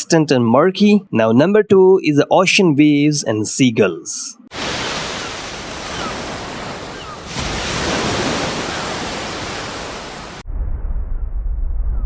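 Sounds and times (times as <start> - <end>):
muffled surf low rumble: 4.5 - 10.4
ocean waves breaking: 4.5 - 10.4
faint seagull calls: 4.6 - 10.2.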